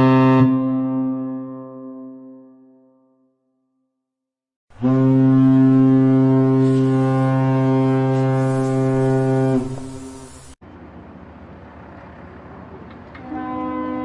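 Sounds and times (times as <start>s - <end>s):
ship's horn blast: 0.0s - 3.2s, 4.7s - 10.2s, 13.2s - 14.0s.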